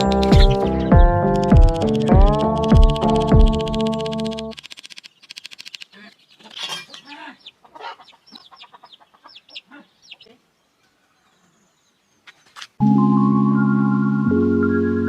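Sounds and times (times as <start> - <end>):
background music: 0.0 - 4.6, 12.8 - 15.0
rapid clicks: 0.0 - 6.2
high chirps: 0.0 - 7.6
chickens clucking: 5.8 - 11.5.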